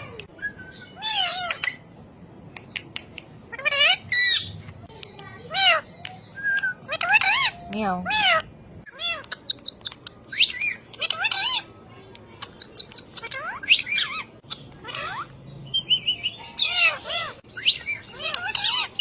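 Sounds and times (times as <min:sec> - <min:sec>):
parrot squawks and whistled chirps: 0:00.4 - 0:01.8, 0:05.5 - 0:11.7, 0:12.7 - 0:19.0
parrot clicks: 0:02.5 - 0:03.3, 0:09.1 - 0:10.1.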